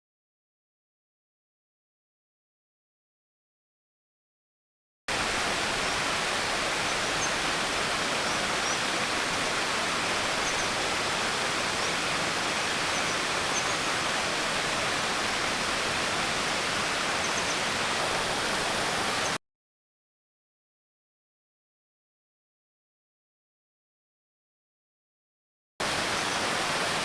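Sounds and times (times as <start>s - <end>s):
mountain stream rushing: 5.1s - 19.4s, 25.8s - 27.0s.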